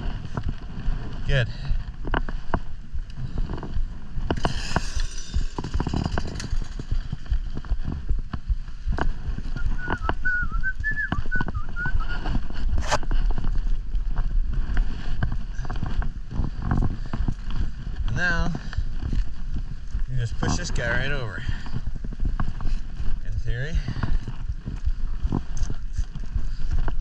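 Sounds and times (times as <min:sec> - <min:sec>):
wind rumble on microphone: 0:00.0 - 0:27.0.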